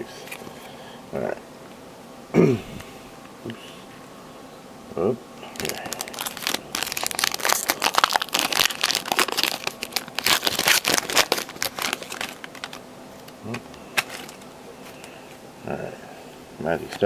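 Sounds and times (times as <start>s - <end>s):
wrapper crinkling and tearing: 5.4s - 15.1s.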